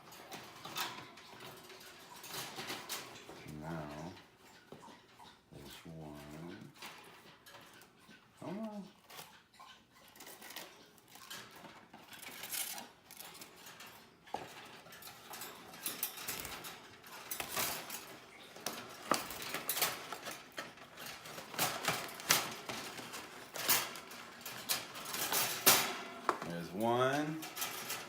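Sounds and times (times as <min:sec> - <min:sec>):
wire birdcage clinking and rattling: 0:00.0 - 0:28.0
rustling: 0:10.0 - 0:28.0.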